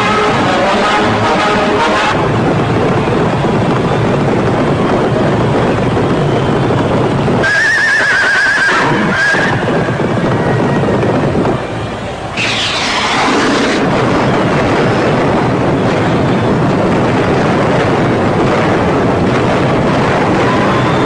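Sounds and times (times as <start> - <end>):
loud rush of noise: 0.0 - 21.0
horse whinny: 12.4 - 13.8.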